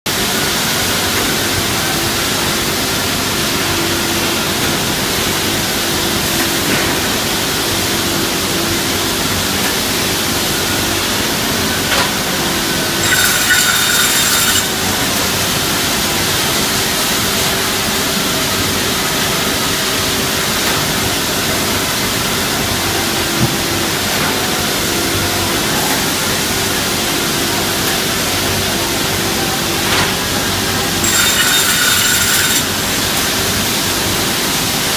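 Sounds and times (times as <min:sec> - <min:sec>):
saw machine humming: 0:12.3 - 0:15.2, 0:30.4 - 0:34.4
high ringing: 0:13.0 - 0:14.7, 0:31.0 - 0:33.0.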